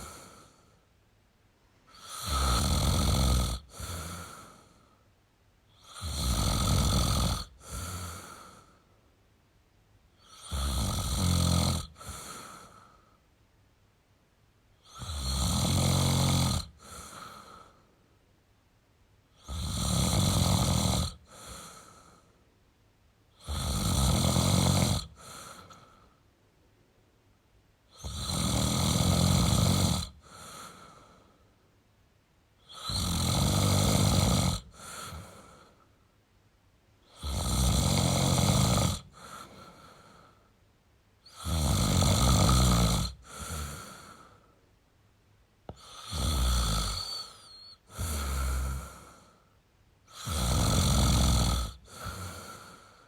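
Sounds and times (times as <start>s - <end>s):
man snoring: 0.0s - 0.7s, 1.9s - 4.8s, 5.7s - 8.8s, 10.2s - 12.9s, 14.8s - 17.8s, 19.3s - 22.2s, 23.3s - 26.0s, 27.9s - 31.2s, 32.6s - 35.8s, 37.0s - 40.4s, 41.3s - 44.4s, 45.7s - 49.4s, 50.1s - 53.0s
quiet breath: 0.0s - 2.6s, 3.5s - 6.0s, 7.4s - 9.2s, 11.9s - 13.4s, 16.7s - 18.2s, 21.1s - 22.6s, 25.0s - 26.9s, 30.0s - 31.8s, 34.5s - 36.2s, 39.0s - 41.5s, 43.0s - 44.8s, 45.7s - 50.6s, 51.6s - 53.0s.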